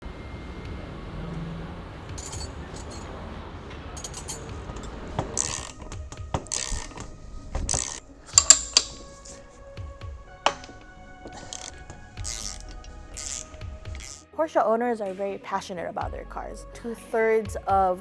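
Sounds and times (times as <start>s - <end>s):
background music: 0.1s - 18.0s
metal tools clinking: 2.2s - 3.1s, 4.0s - 14.2s.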